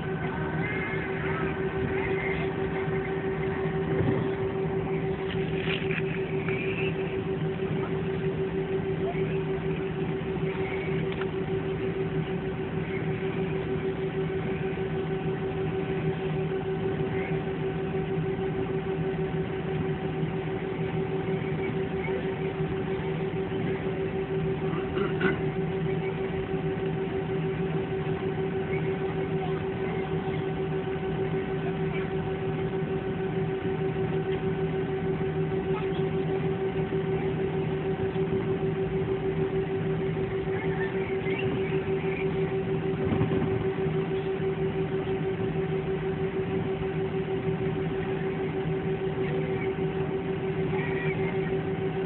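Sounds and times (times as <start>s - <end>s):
airliner cabin engine rush: 0.0s - 14.7s, 39.7s - 44.3s
jet engines droning in cabin: 0.0s - 52.0s
low steady hum: 0.0s - 52.0s.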